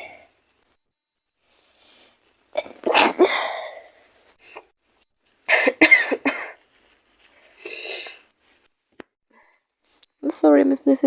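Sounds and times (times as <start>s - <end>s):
woman coughing: 2.6s - 3.6s, 5.5s - 6.6s
woman sneezing: 2.9s - 3.6s.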